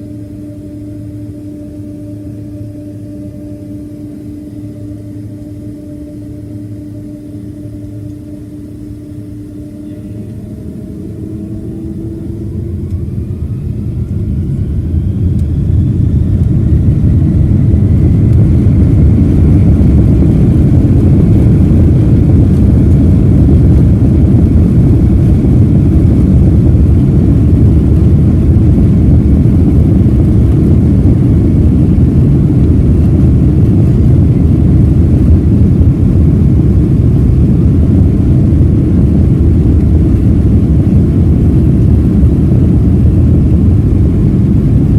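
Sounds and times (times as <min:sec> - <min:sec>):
jet engine roar: 0:00.0 - 0:44.9
jet engines whining: 0:00.0 - 0:44.9.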